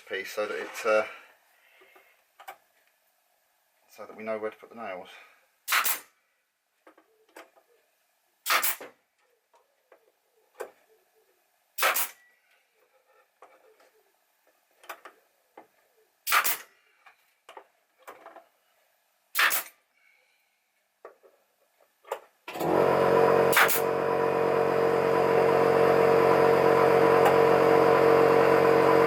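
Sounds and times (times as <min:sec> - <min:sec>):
nail gun firing: 0:05.7 - 0:06.1, 0:08.4 - 0:08.9, 0:11.8 - 0:12.2, 0:16.3 - 0:16.7, 0:19.4 - 0:19.8, 0:23.5 - 0:24.0.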